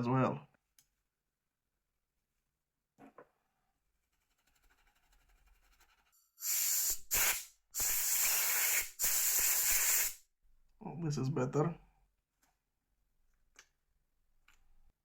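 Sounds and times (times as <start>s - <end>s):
air duster hissing bursts: 6.4s - 10.2s
faint hiss: 6.4s - 10.2s.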